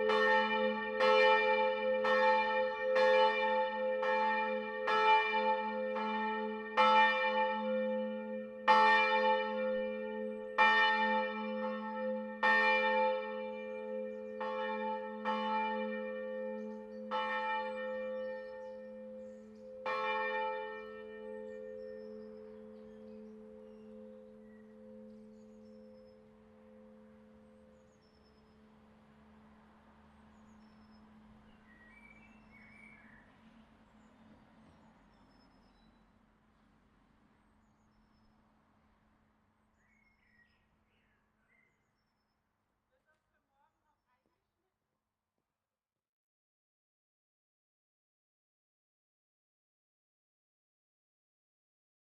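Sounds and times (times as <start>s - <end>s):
church bells ringing: 0.0s - 27.8s.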